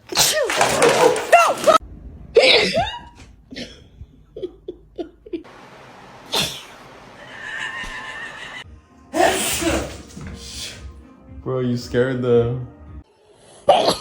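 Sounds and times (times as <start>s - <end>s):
person laughing: 4.3s - 5.5s, 6.3s - 8.6s
loud sneeze: 6.2s - 6.9s, 9.2s - 10.8s.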